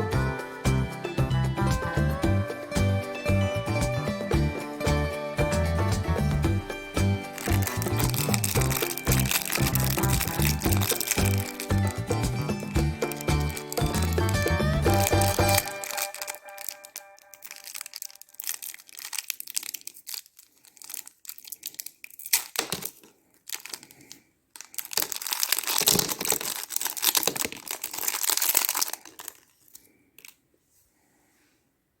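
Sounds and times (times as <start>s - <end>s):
foil wrapper crinkling: 7.3s - 30.4s.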